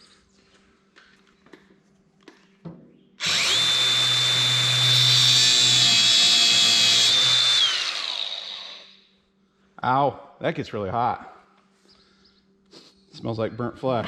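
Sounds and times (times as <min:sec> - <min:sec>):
angle grinder cutting steel: 0:03.2 - 0:09.0.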